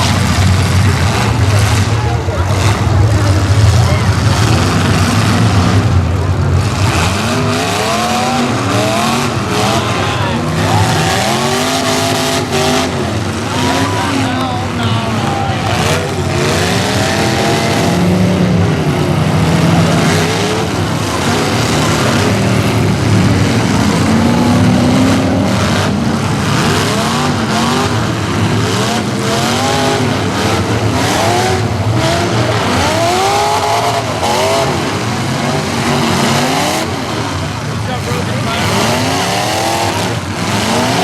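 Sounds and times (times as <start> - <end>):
car engines revving: 0.0 - 41.0
cars colliding: 0.0 - 41.0.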